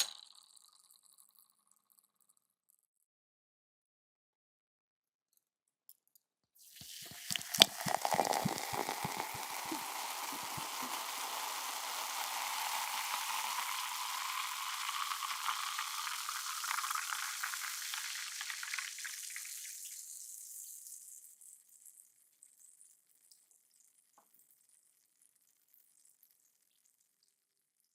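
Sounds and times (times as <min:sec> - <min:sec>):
water splashing into a glass: 0:06.6 - 0:19.9
carbonation fizzing and crackling: 0:06.6 - 0:22.0.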